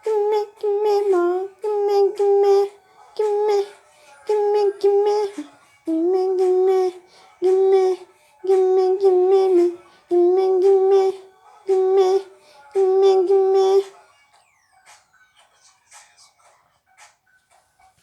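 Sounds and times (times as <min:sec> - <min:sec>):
girl singing unaccompanied: 0:00.0 - 0:14.0.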